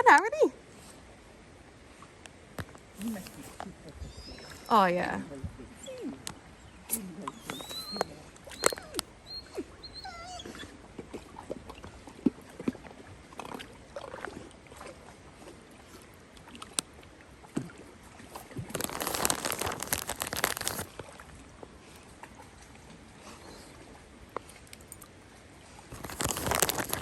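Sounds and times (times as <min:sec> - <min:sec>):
water splashing: 0:02.7 - 0:27.0
dog whining: 0:04.0 - 0:04.7, 0:07.1 - 0:10.8.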